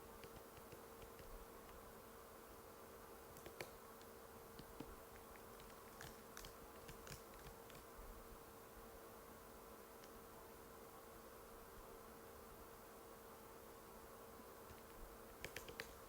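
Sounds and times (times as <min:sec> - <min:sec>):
faint steady hum: 0:00.0 - 0:16.0
laptop keyboard clicks: 0:05.6 - 0:07.8, 0:15.4 - 0:16.0.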